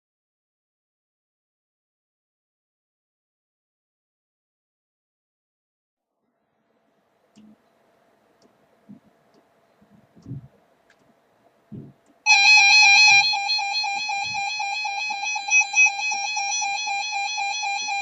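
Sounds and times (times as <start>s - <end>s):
harsh electronic alert tone: 12.3s - 18.0s.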